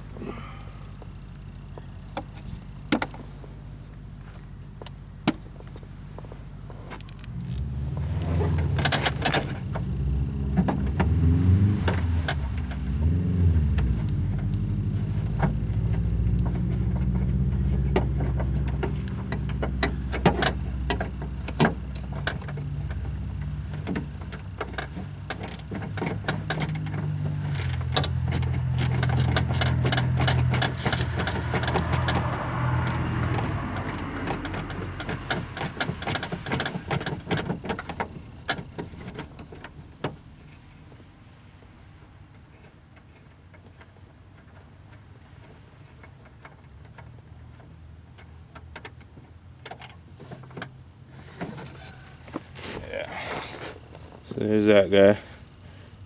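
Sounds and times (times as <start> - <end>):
car engine idling: 0.0 - 56.0.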